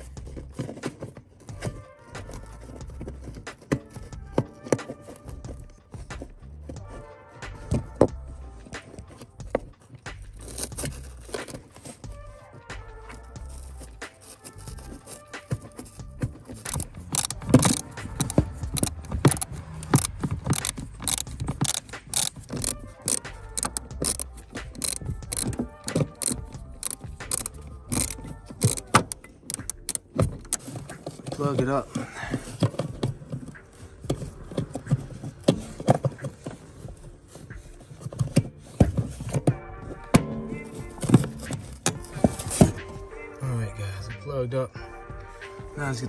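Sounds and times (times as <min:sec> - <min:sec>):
hand tools clicking and rattling: 0:00.0 - 0:06.7, 0:07.6 - 0:12.1, 0:13.1 - 0:39.6, 0:40.2 - 0:43.0
hands clicking plug onto motor: 0:16.5 - 0:31.4.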